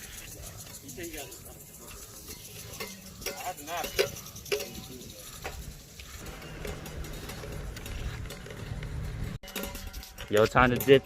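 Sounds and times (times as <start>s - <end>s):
people talking: 0.4s - 5.6s, 10.3s - 11.0s.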